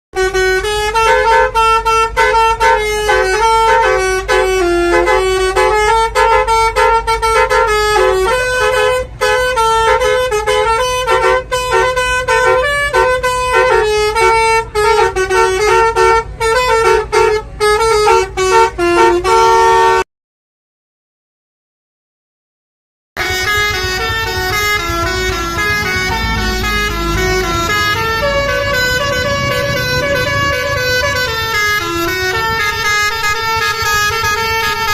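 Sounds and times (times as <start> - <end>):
multi-tone bus horn tune: 0.2 - 20.1, 23.2 - 34.9
steady low rumble: 23.3 - 34.9.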